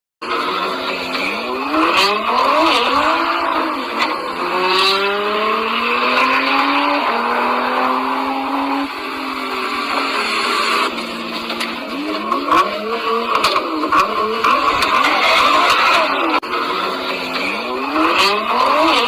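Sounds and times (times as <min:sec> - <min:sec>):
car engine accelerating: 0:00.2 - 0:19.0
road noise: 0:00.2 - 0:19.0.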